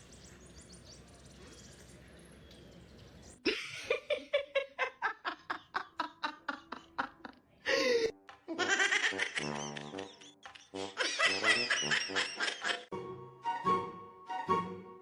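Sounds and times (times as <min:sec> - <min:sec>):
person laughing hard: 0:03.5 - 0:12.9.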